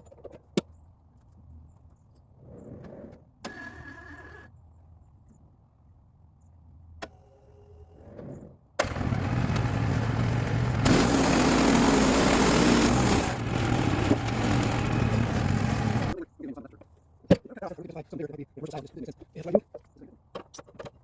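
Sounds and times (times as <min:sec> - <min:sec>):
small gas engine running: 0:08.8 - 0:16.2.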